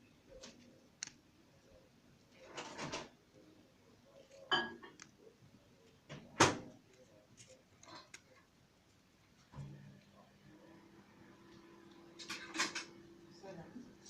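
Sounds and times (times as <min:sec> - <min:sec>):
cards and foil pack rustling: 0:06.7 - 0:08.5.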